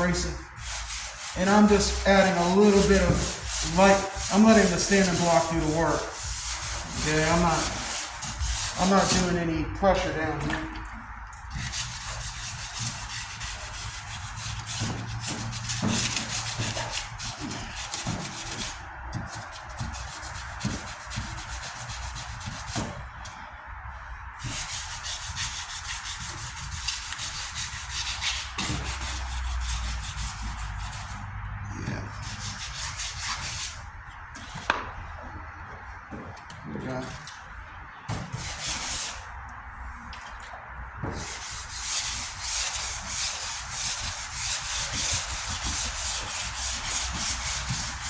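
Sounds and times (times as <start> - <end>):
wet sandpaper rubbing on metal: 0.0 - 10.4, 11.5 - 23.0, 24.4 - 31.3, 32.1 - 35.2, 38.3 - 39.3, 41.2 - 48.0.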